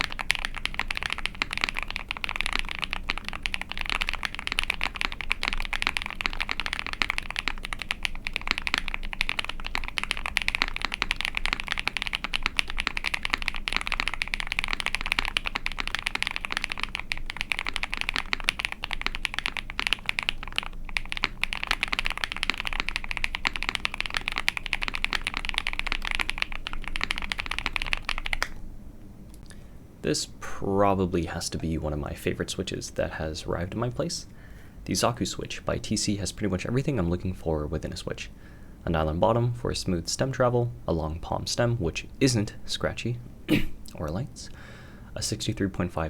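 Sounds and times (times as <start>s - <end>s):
fast mechanical keyboard typing: 0.0s - 28.6s.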